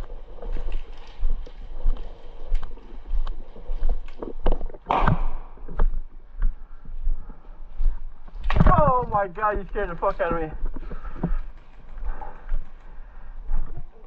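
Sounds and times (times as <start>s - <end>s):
footsteps on ground: 0.0s - 11.6s.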